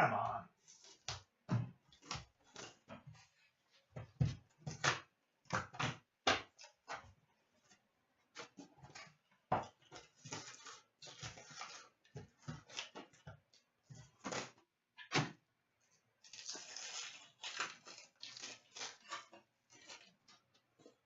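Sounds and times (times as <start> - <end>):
wrappers crinkling and tearing: 16.2 - 20.4.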